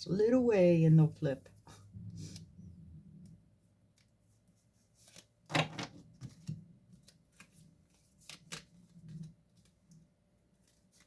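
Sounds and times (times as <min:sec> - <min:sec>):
cards shuffling and rustling: 0:04.9 - 0:11.0.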